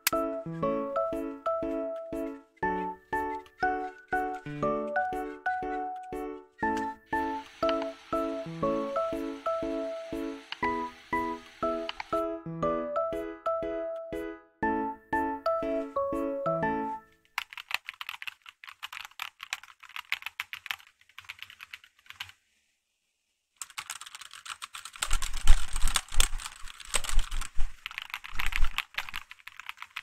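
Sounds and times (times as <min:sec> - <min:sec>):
short music: 0:00.1 - 0:17.0
mechanical keyboard typing: 0:03.1 - 0:08.0, 0:11.6 - 0:12.2, 0:17.4 - 0:22.4, 0:23.6 - 0:30.0.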